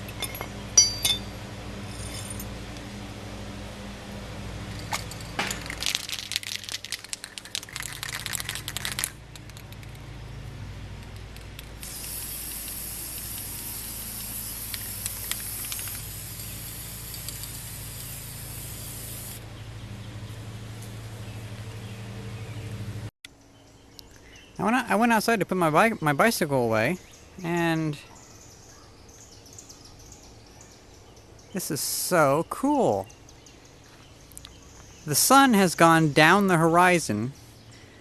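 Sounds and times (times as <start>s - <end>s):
spray can rattling: 4.7s - 10.0s, 11.4s - 19.4s
spray paint hissing: 11.7s - 19.4s.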